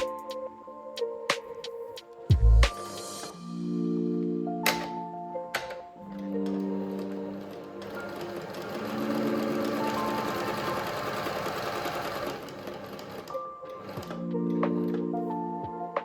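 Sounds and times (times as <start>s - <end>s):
background music sustained tones: 0.0s - 16.0s
sewing machine rattling: 6.4s - 14.2s.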